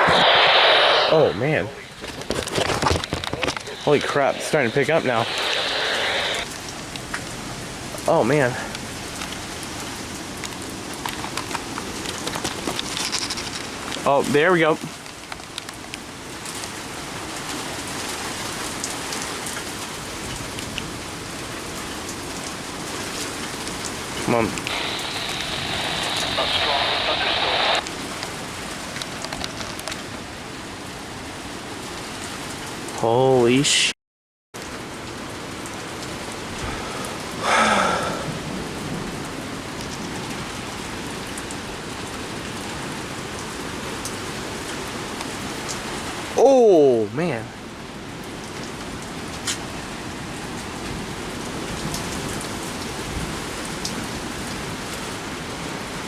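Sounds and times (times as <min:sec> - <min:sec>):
rain pouring: 0:01.4 - 0:28.1, 0:34.6 - 0:46.6.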